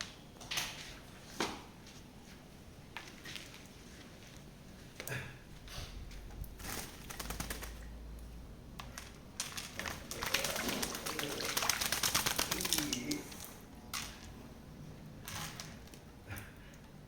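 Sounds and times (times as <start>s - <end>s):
parrot splashing in water: 9.8s - 13.6s.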